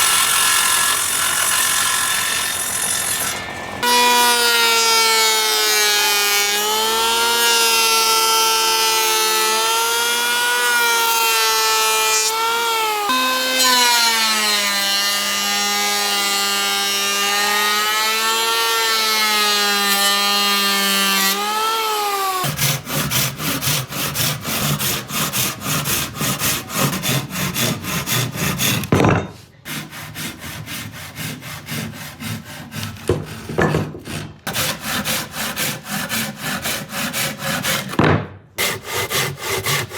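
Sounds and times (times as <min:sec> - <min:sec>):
hand saw sawing wood: 0:00.0 - 0:39.9.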